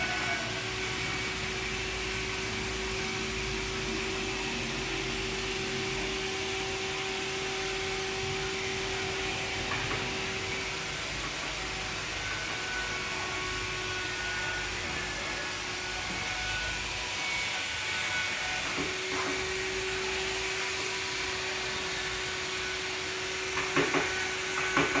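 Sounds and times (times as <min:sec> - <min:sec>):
small power tool motor running: 0:00.0 - 0:25.0
knocks: 0:23.6 - 0:25.0.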